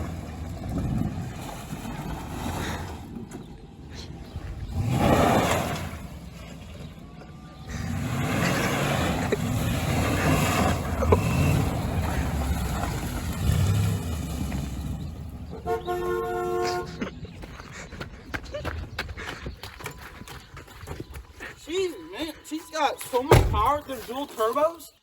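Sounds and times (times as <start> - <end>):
exhaust whistling: 0.0 - 17.4
truck engine revving: 0.0 - 18.0.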